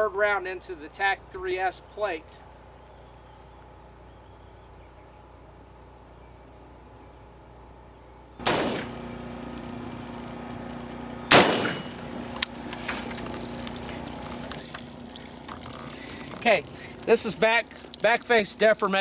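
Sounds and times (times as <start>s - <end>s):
rifle shots: 8.4s - 9.3s, 11.3s - 12.2s.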